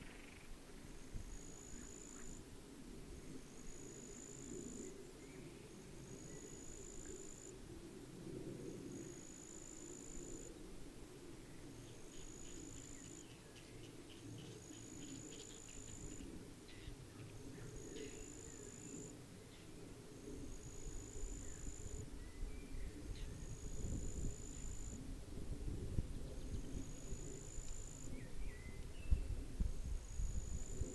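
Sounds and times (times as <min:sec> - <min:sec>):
insect buzzing song: 0:00.0 - 0:00.6, 0:11.8 - 0:19.7, 0:23.1 - 0:25.0
low wind rumble: 0:00.0 - 0:30.9.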